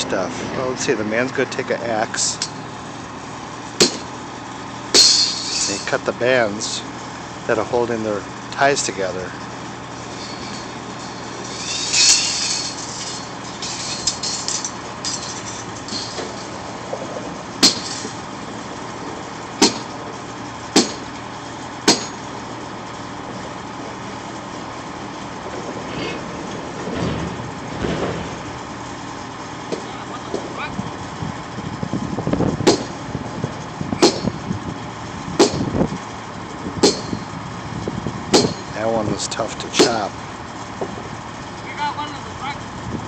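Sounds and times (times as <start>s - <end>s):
machinery engine running: 0.0s - 43.0s
axe striking metal bands: 3.8s - 4.1s, 4.9s - 5.9s, 10.0s - 16.6s, 17.6s - 18.2s, 19.6s - 19.9s, 20.7s - 21.1s, 21.9s - 22.2s, 32.7s - 33.0s, 34.0s - 34.4s, 35.4s - 35.7s, 36.8s - 37.3s, 38.3s - 38.8s, 39.8s - 40.1s.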